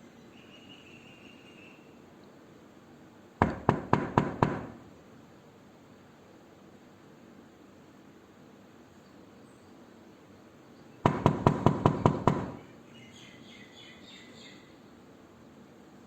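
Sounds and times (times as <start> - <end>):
knocking on a door: 3.4 - 4.8, 11.1 - 12.6.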